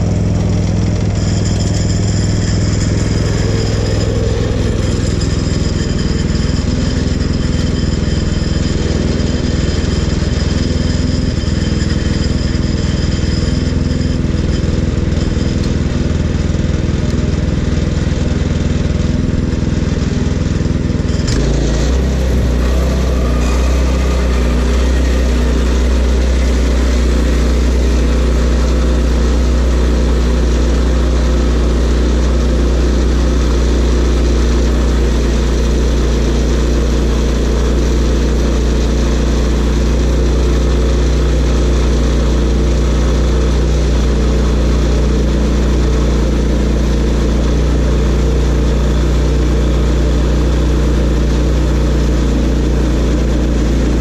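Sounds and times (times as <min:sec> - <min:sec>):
sawmill engine running: 0:00.0 - 0:54.0.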